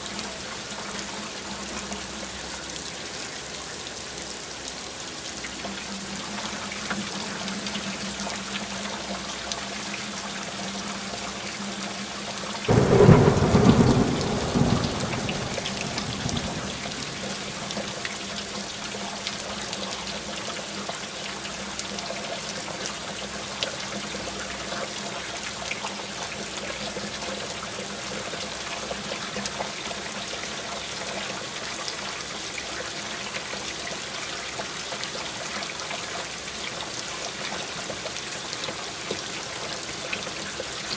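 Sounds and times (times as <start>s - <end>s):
steady rain: 0.0s - 40.9s
thunder rumbling: 12.7s - 18.0s.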